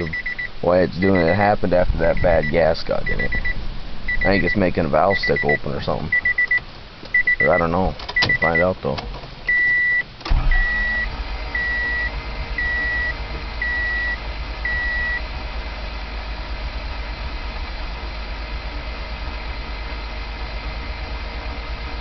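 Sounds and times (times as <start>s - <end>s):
car warning chime beeping: 0.0s - 8.8s, 9.5s - 15.3s
low rumble: 10.3s - 22.0s.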